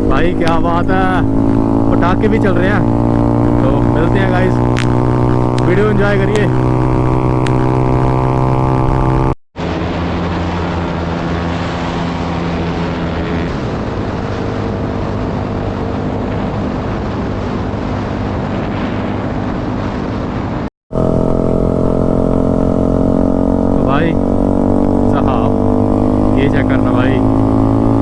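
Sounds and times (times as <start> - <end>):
motorcycle engine running: 0.0 - 9.4, 20.9 - 28.0.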